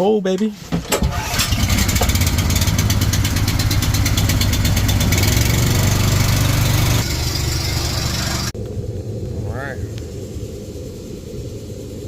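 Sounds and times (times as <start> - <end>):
air compressor running: 1.1 - 8.6.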